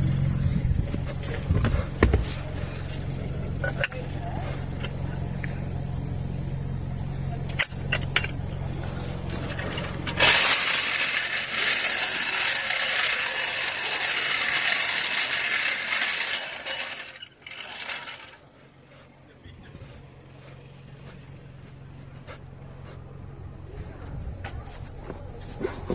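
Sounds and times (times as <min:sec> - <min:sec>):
low hum: 0:00.0 - 0:25.9
impact wrench rattling: 0:09.3 - 0:18.4.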